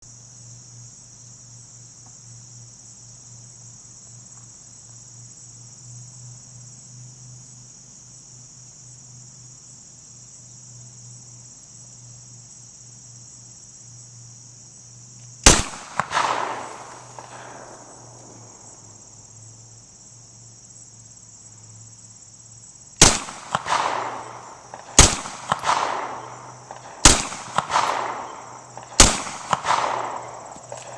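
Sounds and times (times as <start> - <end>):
high insect buzz: 0.0 - 30.9
pistol shots with echo: 15.5 - 18.5, 23.0 - 30.9.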